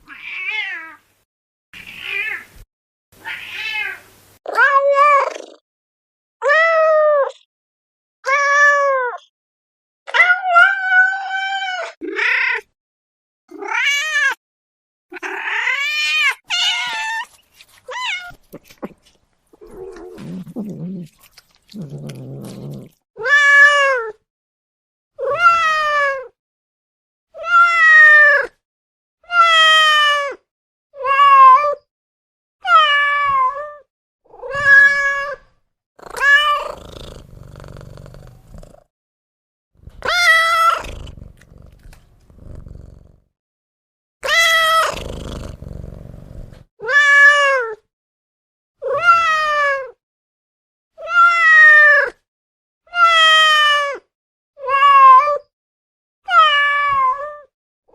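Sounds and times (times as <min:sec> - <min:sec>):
cat meowing: 0:00.1 - 0:01.0, 0:03.2 - 0:05.3, 0:10.1 - 0:12.7, 0:15.1 - 0:19.0, 0:21.8 - 0:24.2, 0:32.6 - 0:35.4, 0:36.1 - 0:37.0, 0:40.0 - 0:41.0, 0:44.2 - 0:45.0, 0:46.8 - 0:47.8, 0:48.8 - 0:50.0, 0:51.0 - 0:52.2, 0:53.0 - 0:55.4, 0:56.3 - 0:57.5.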